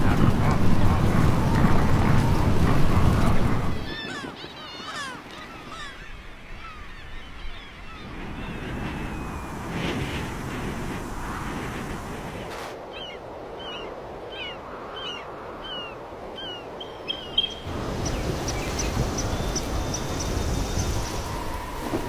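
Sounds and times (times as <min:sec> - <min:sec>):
bird chirping: 0:16.4 - 0:22.0.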